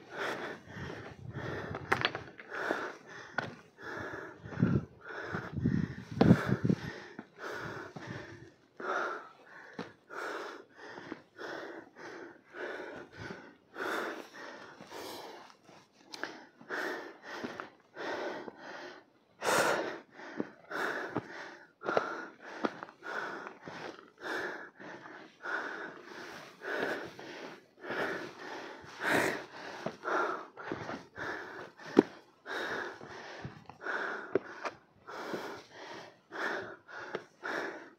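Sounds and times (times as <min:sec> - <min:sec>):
person panting: 0:00.0 - 0:37.9.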